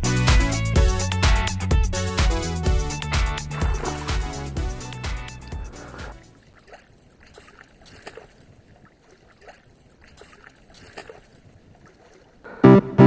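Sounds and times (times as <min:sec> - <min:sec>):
background music: 0:00.0 - 0:06.3, 0:12.6 - 0:13.0.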